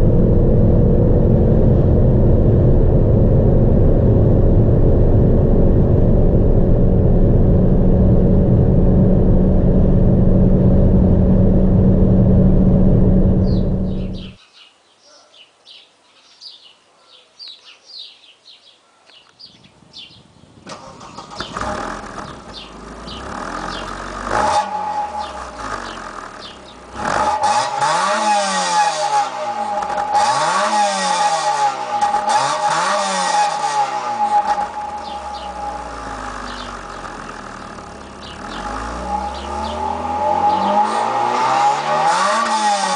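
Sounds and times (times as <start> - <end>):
car engine accelerating: 0.0 - 14.4, 20.7 - 42.9
steady whine: 0.0 - 14.4, 33.4 - 41.5
birds chirping: 13.4 - 27.0, 34.2 - 42.4.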